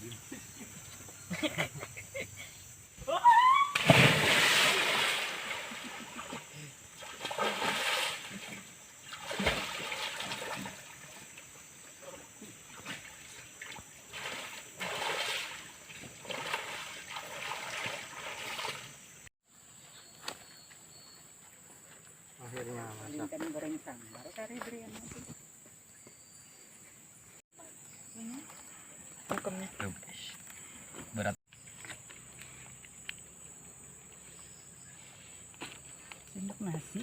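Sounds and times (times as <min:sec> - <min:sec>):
water splashing and sloshing: 0:03.8 - 0:19.3.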